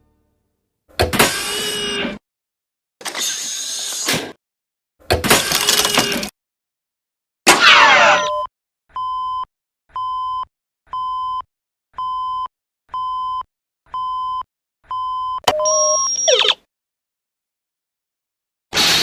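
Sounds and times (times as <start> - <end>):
single-pitch electronic beeps: 14.9 - 16.6.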